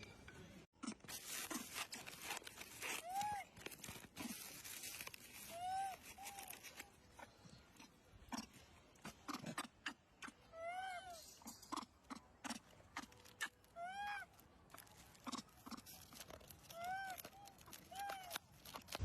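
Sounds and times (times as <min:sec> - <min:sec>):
baby monkey coo calls: 0:05.4 - 0:06.9, 0:08.3 - 0:18.9
chewing clicks and crunches: 0:11.7 - 0:13.7, 0:14.7 - 0:19.0.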